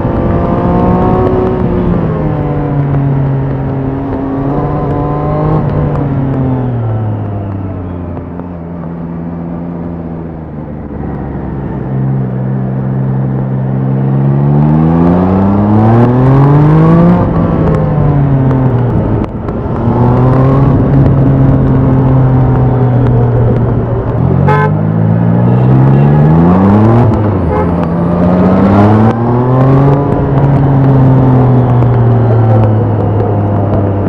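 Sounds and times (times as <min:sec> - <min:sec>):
motorcycle engine revving: 0:00.0 - 0:34.0
short horn beep: 0:24.5 - 0:24.8.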